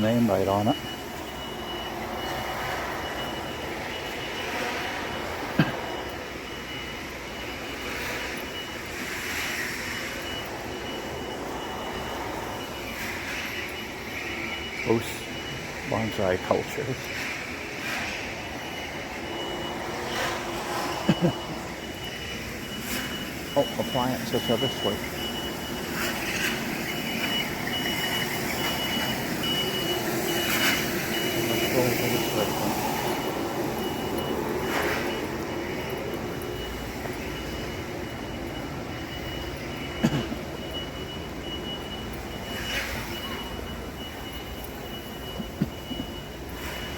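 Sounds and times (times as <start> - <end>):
backup alarm beeping: 0.0 - 46.9
steady background noise: 0.0 - 46.9.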